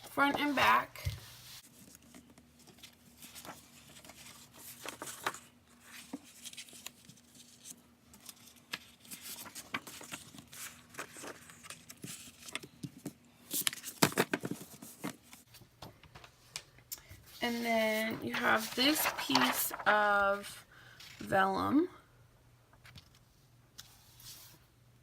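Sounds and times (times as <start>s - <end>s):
paper rustling and crinkling: 0.4s - 16.3s, 17.3s - 20.5s.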